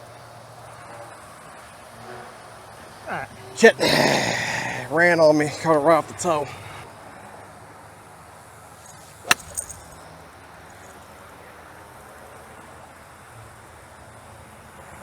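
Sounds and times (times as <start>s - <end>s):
golf club striking ball: 8.8s - 10.0s.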